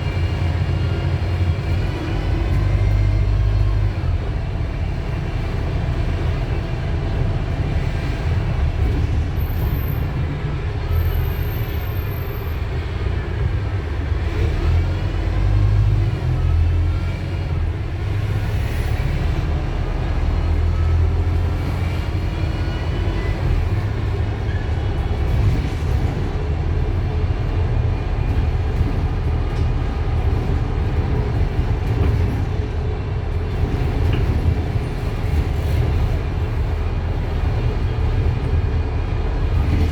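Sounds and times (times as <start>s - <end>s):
diesel bus engine rumble: 0.0s - 39.9s.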